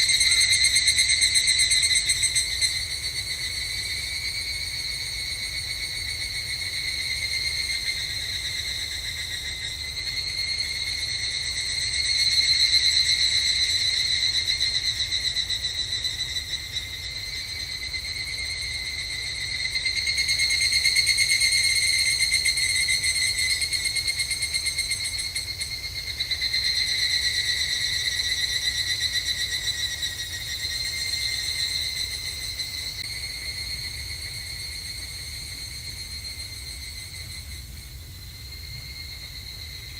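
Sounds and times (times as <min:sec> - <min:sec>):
cicadas calling: 0:00.0 - 0:39.9.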